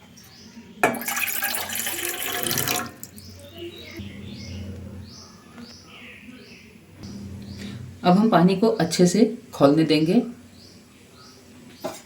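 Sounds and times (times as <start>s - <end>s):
water pouring into saucepan: 0.9s - 3.2s.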